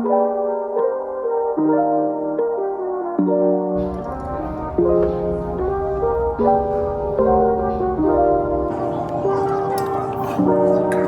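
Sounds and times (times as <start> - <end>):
low noisy layer: 3.8 - 11.0
soft sustained chords: 3.8 - 11.0.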